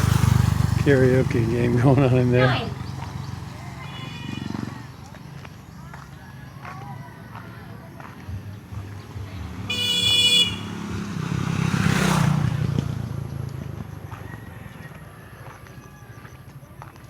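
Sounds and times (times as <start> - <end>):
motor vehicle passing: 0.0 - 17.0
vehicle horn beep: 9.7 - 10.9.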